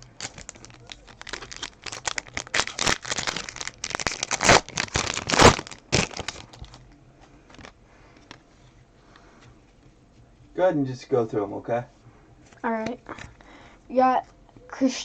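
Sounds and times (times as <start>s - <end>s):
foil wrapper tearing and crinkling: 0.0s - 6.8s, 7.5s - 7.8s.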